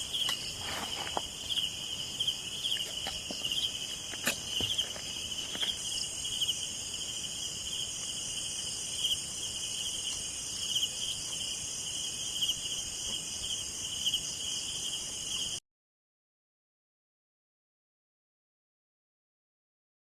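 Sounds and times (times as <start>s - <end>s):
crickets and insects trilling: 0.0s - 15.6s.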